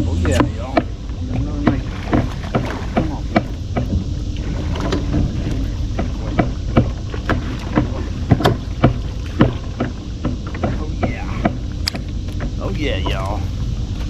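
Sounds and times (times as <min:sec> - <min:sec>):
steady low rumble: 0:00.0 - 0:14.0
sharp knocks: 0:05.9 - 0:13.2.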